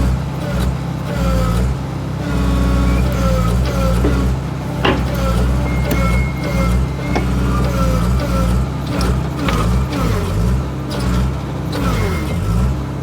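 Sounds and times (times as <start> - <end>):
excavator engine under load: 0.0 - 13.0
sharp knocks: 4.0 - 8.4.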